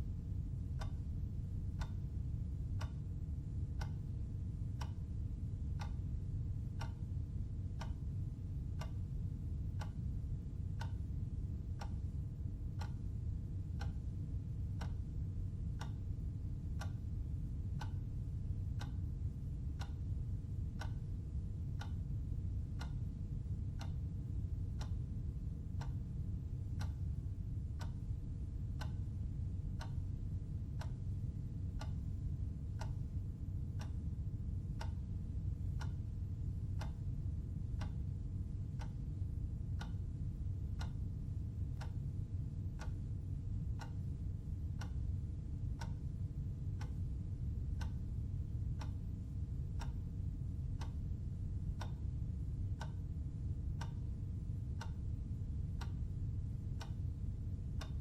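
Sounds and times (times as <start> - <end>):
low hum: 0.0 - 58.0
clock ticking: 0.8 - 3.1, 3.7 - 4.1, 4.7 - 5.0, 5.7 - 6.1, 6.7 - 7.1, 7.7 - 10.2, 10.8 - 13.0, 13.8 - 14.1, 14.7 - 15.1, 15.7 - 18.1, 18.7 - 22.0, 22.7 - 27.1, 27.8 - 28.1, 28.8 - 29.1, 29.8 - 30.1, 30.7 - 34.1, 34.7 - 35.0, 35.7 - 38.1, 38.7 - 39.2, 39.8 - 40.0, 40.7 - 42.1, 42.8 - 50.0, 50.8 - 51.2, 51.8 - 53.1, 53.8 - 54.1, 54.8 - 56.1, 56.8 - 58.0.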